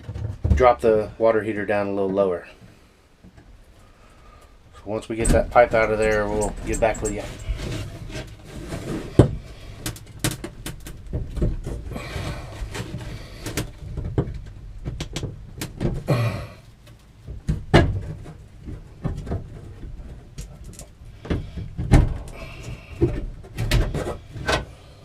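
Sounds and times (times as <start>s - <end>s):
tools knocking and clunking: 5.2s - 16.1s, 17.2s - 24.7s.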